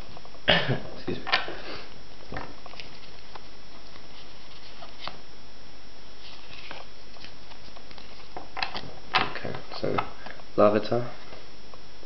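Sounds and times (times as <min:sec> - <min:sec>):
steady hiss: 0:00.0 - 0:12.0
trading cards crinkling: 0:02.4 - 0:05.2, 0:06.2 - 0:10.3.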